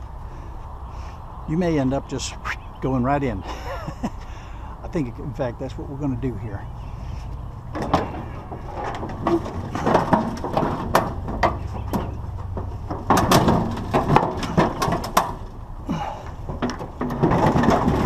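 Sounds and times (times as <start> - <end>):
scrap metal clattering and scraping: 6.9 - 18.0.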